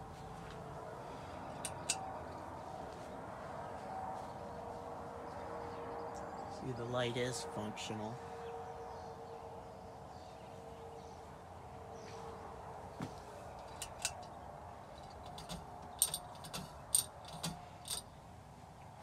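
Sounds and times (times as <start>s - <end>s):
metal pull chain clicking: 1.6s - 2.1s, 13.6s - 14.3s, 15.0s - 18.1s.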